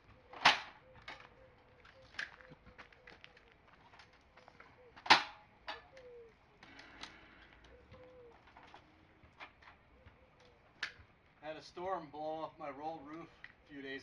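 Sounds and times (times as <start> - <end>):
dove cooing: 0.0 - 11.2.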